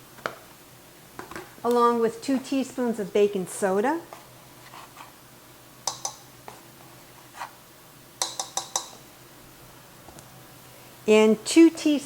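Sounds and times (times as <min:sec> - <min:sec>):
measuring spoon tapping: 0:05.9 - 0:06.2, 0:08.2 - 0:09.0.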